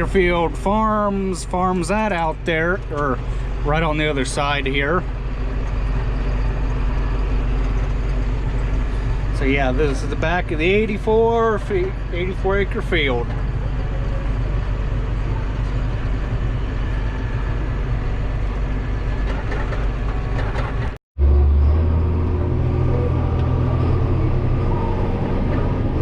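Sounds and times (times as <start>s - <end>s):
farm machine engine running: 0.0s - 26.0s.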